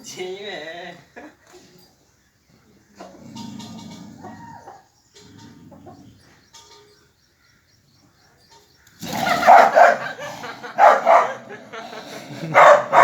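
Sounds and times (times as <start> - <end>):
rooster and dog crying out: 4.2 - 4.9, 9.1 - 10.2.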